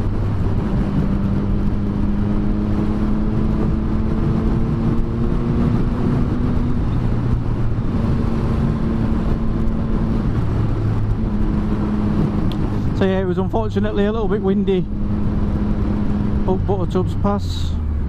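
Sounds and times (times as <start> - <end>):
heavy wind noise: 0.0 - 18.0.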